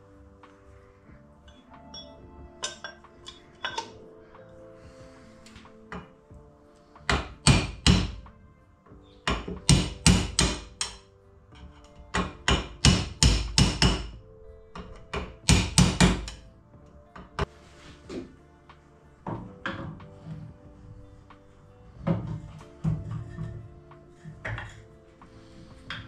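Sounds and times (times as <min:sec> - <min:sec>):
hammer striking metal: 0:07.1 - 0:08.3, 0:09.2 - 0:11.1, 0:11.8 - 0:14.2, 0:14.8 - 0:16.4.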